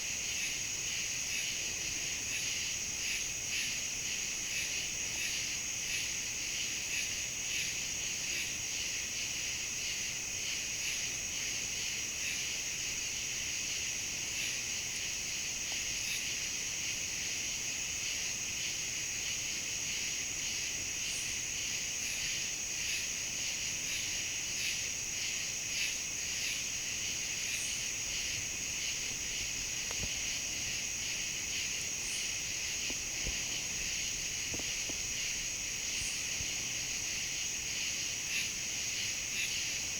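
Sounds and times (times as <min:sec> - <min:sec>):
insects buzzing: 0:00.0 - 0:39.9
faint ticks: 0:29.8 - 0:30.4, 0:32.8 - 0:35.1.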